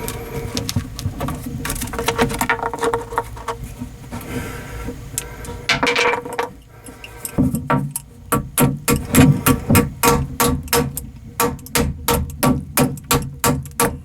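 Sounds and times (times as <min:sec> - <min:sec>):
loud knocks: 0:07.4 - 0:14.0.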